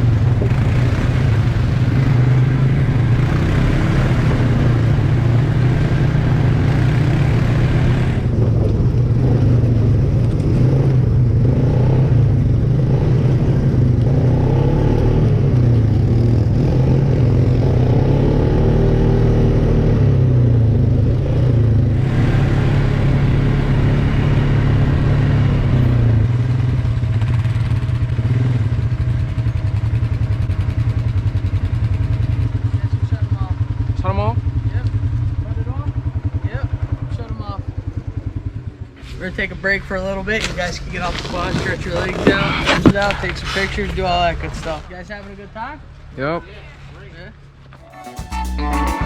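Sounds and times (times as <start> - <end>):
quad bike engine revving: 0.0 - 44.8.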